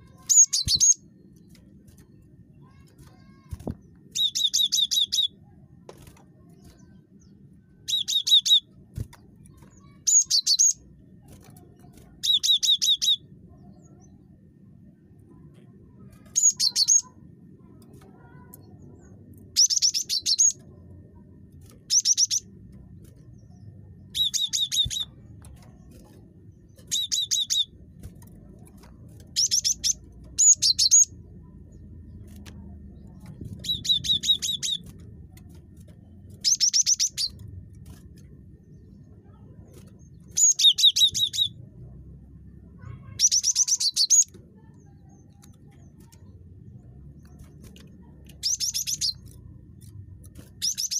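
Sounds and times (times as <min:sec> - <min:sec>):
faint low hum: 0:00.0 - 0:50.9.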